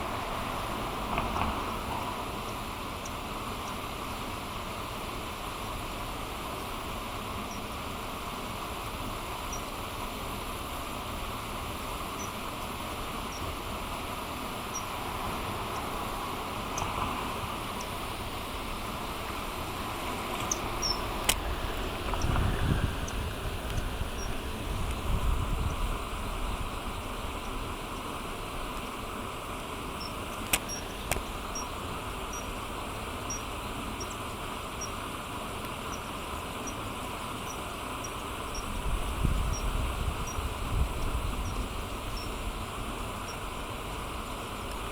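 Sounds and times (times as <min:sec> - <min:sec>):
outdoor background noise: 0:00.0 - 0:44.9
rushing background noise: 0:00.0 - 0:44.9
kingfisher calls: 0:12.1 - 0:12.4, 0:15.7 - 0:25.8, 0:29.9 - 0:35.0, 0:41.4 - 0:43.6
sharp click: 0:30.4 - 0:31.2.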